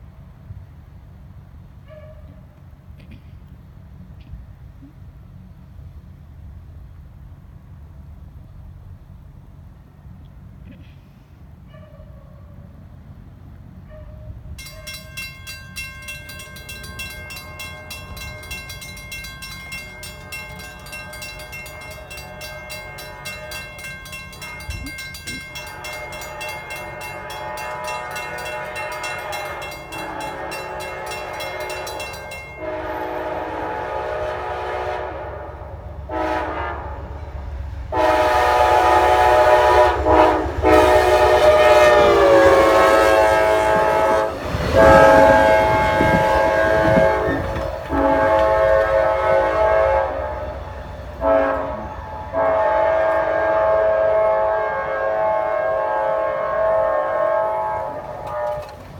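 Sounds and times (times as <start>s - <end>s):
approaching train rumble: 0.0s - 58.9s
train horn blasts: 1.8s - 2.5s, 13.8s - 58.9s
crossing bell ringing: 14.6s - 34.1s, 38.0s - 55.4s.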